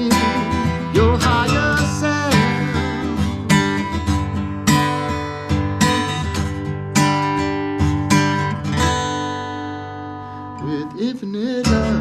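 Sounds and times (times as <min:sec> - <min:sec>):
strummed guitar chords: 0:00.0 - 0:12.0.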